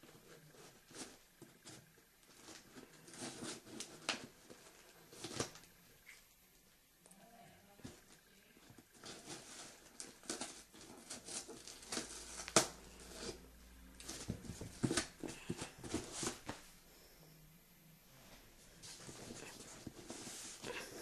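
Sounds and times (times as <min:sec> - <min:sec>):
packaging rustling and crinkling: 0:08.7 - 0:16.7.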